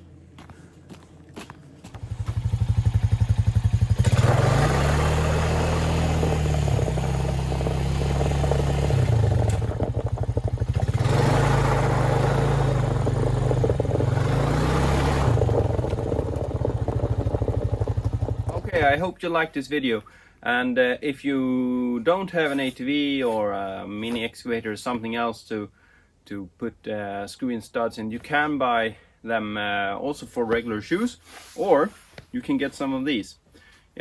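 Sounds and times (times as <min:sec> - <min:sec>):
atv engine revving: 0:01.9 - 0:19.1.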